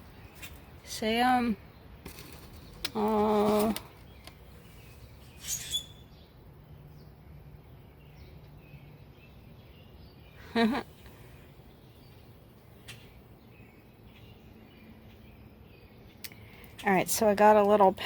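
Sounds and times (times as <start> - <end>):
songbirds calling: 0.0 - 18.0
faint bird chirps: 3.5 - 6.4
harsh high bird squawk: 5.4 - 6.1.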